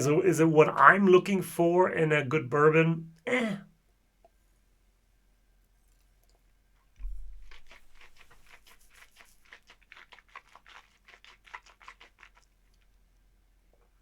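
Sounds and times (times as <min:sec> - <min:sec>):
wet mouth clicks and lip smacks: 0:07.0 - 0:12.9
person sipping: 0:07.3 - 0:12.9.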